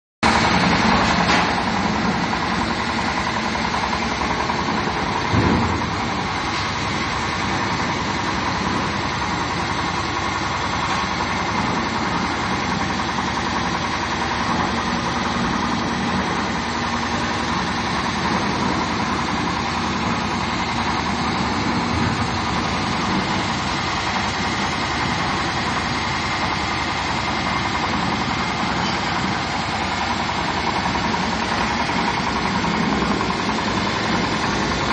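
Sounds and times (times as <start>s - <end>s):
concrete mixer engine running: 0.2s - 34.9s
low thump: 5.2s - 6.0s.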